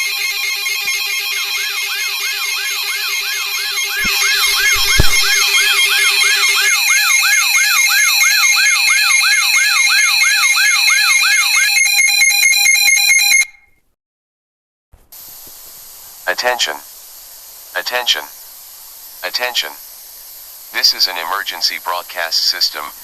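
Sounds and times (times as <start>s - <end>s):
siren-like alarm sweep: 0.0s - 13.5s
fast pulsing warble: 2.4s - 9.0s
steady high tones: 2.7s - 9.0s
deep thump: 4.0s - 5.9s
low hum: 4.0s - 7.6s.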